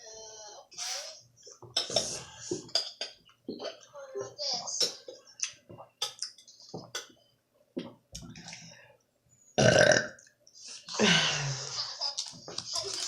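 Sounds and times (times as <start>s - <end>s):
person burping: 9.6s - 10.2s.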